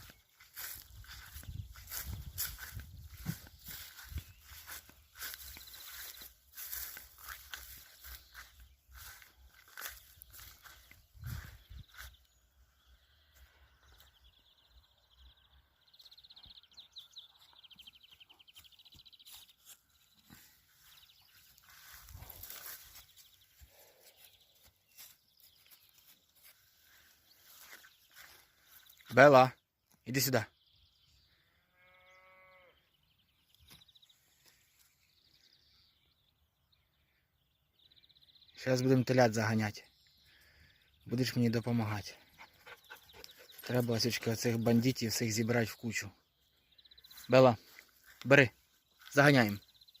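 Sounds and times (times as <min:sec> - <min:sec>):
calf mooing: 0:31.7 - 0:32.8.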